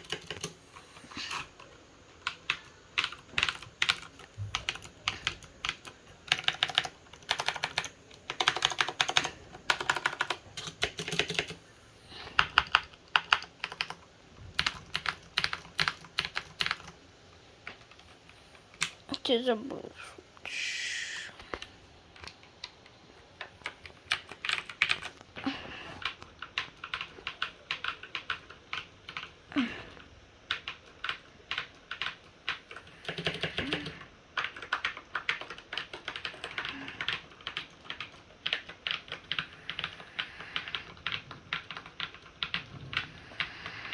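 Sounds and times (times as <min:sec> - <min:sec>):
mechanical keyboard typing: 0:00.0 - 0:00.6, 0:01.2 - 0:11.6, 0:12.4 - 0:17.0, 0:23.4 - 0:25.2, 0:26.0 - 0:29.4, 0:30.5 - 0:43.9.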